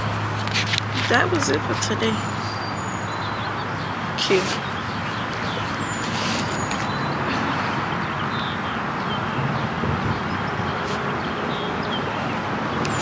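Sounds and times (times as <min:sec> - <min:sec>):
outdoor background hiss: 0:00.0 - 0:09.8.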